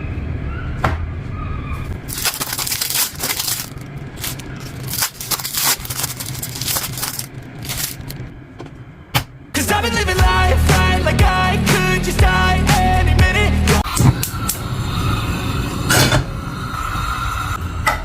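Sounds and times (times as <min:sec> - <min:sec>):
crunching of crispy fried sandwich: 0:02.0 - 0:08.2.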